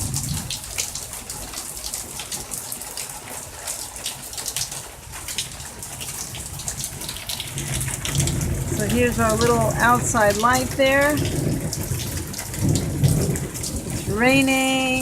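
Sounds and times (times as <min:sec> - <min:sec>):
heavy rain splattering: 0:00.0 - 0:15.0
water drips and splashes: 0:00.0 - 0:15.0.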